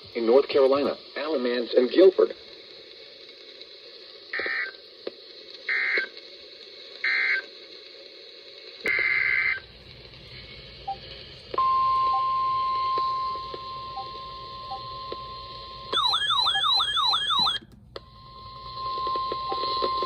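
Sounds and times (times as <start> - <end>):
weather radio alarm tone: 11.6 - 17.6.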